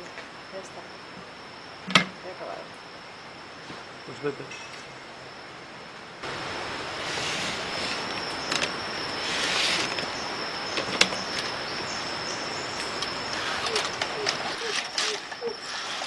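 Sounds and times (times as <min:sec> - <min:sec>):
hissing rush of noise: 0:02.3 - 0:16.0
high-pitched insect drone: 0:06.2 - 0:16.0.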